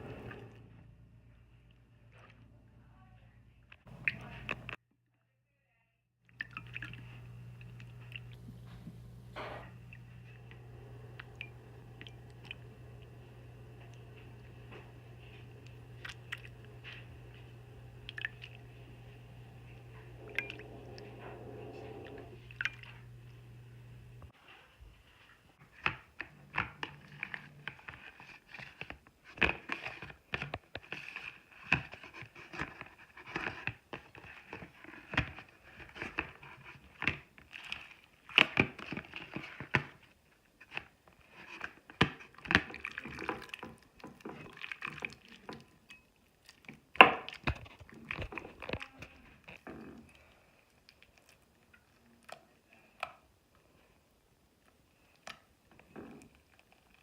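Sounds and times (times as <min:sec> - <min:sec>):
slime squelching by hand: 0:11.1 - 0:23.4, 0:41.2 - 0:53.1.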